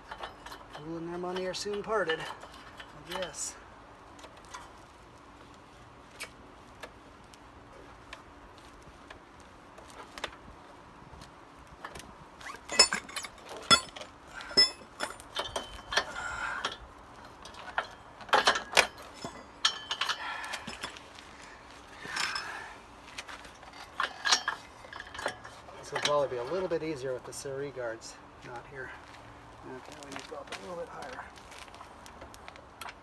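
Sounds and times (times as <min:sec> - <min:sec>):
metal tools clinking: 0:00.0 - 0:03.6, 0:12.4 - 0:21.2, 0:21.9 - 0:27.4.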